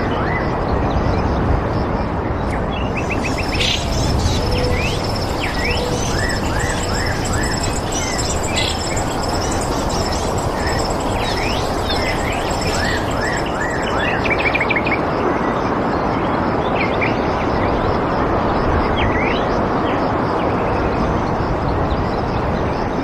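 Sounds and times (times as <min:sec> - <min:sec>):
steady rushing background noise: 0:00.0 - 0:23.0
wild birds chirping: 0:02.6 - 0:14.6.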